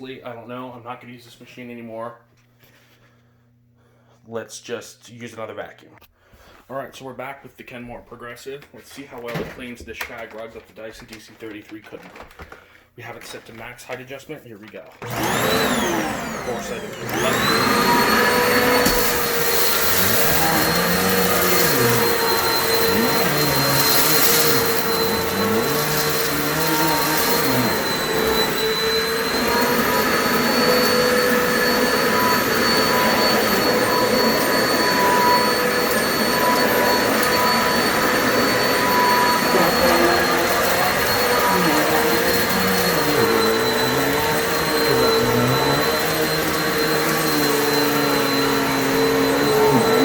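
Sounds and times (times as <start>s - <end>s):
vacuum cleaner whining: 15.0s - 50.0s.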